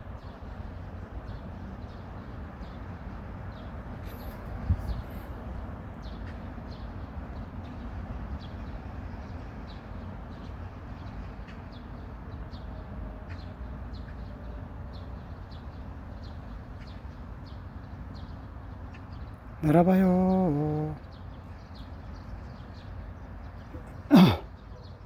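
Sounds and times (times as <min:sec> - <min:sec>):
small birds chirping: 0:08.4 - 0:25.0.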